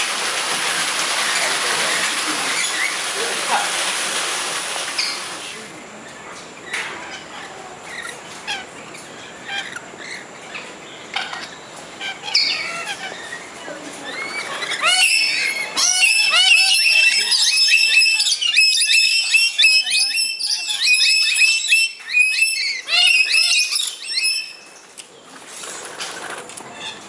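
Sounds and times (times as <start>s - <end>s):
birds chirping and squawking: 6.6s - 24.9s, 25.8s - 27.0s
dense chorus of shrill bird calls: 6.6s - 25.3s.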